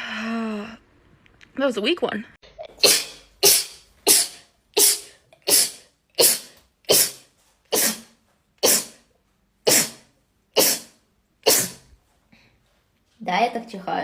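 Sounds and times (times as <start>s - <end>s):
person sneezing: 2.7s - 12.0s.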